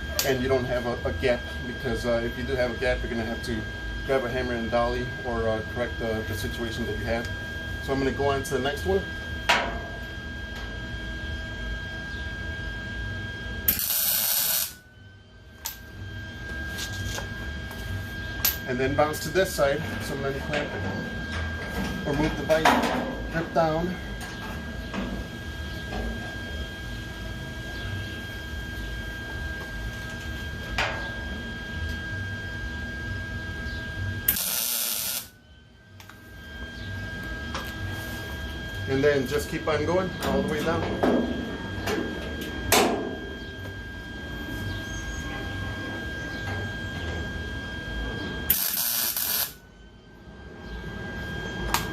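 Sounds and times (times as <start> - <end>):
steady background hum: 0.0 - 51.9
hissing welding arc: 13.7 - 14.8, 34.3 - 35.4, 48.5 - 49.6.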